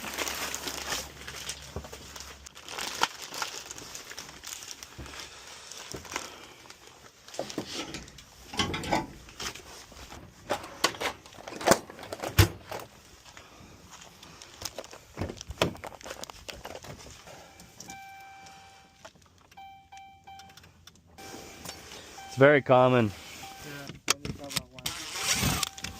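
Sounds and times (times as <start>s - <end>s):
small objects clicking and rustling: 13.9s - 21.1s.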